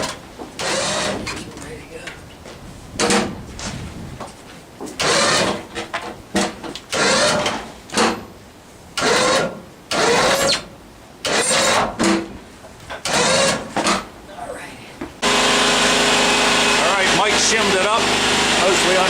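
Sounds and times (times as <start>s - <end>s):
winch motor whirring in bursts: 0.0s - 1.4s, 5.0s - 5.7s, 6.9s - 8.1s, 9.0s - 12.0s, 13.0s - 14.1s, 15.2s - 19.0s.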